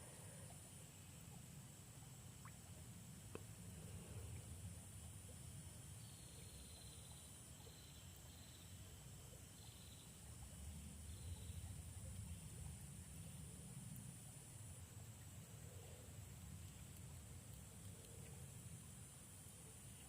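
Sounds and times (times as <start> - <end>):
insect pulsed trills: 0.0 - 20.0
insects high-pitched drone: 3.6 - 16.3.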